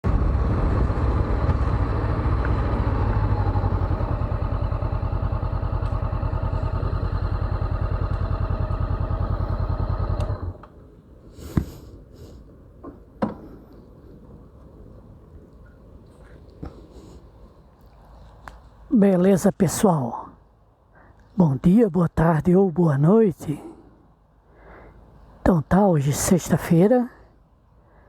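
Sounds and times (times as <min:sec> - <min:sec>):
motorcycle engine idling: 0:00.0 - 0:10.8.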